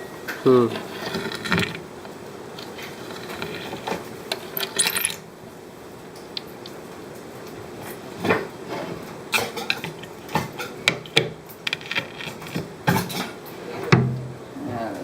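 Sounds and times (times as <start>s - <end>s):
metallic clinks and clatters: 2.6s - 5.3s.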